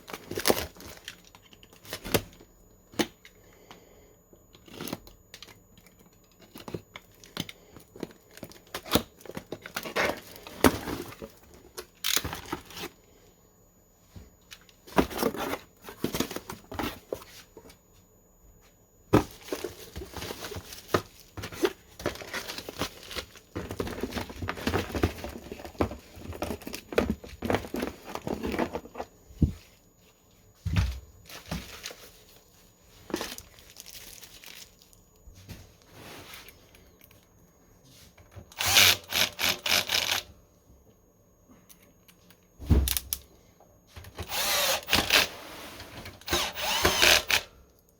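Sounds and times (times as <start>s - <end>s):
packaging crinkling and tearing: 0.0s - 2.2s, 33.1s - 35.0s.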